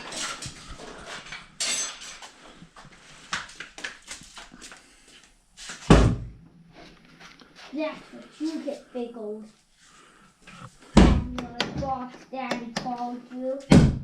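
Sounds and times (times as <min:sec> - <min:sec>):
metal parts clinking: 0:01.6 - 0:02.2
heavy thud: 0:11.0 - 0:11.4.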